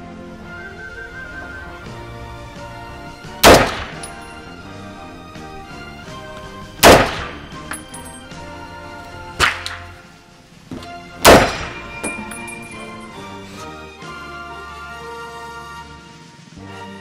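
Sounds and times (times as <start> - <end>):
background music: 0.0 - 17.0
rifle shots: 3.4 - 4.2, 6.8 - 7.6, 9.4 - 9.9, 11.2 - 12.0.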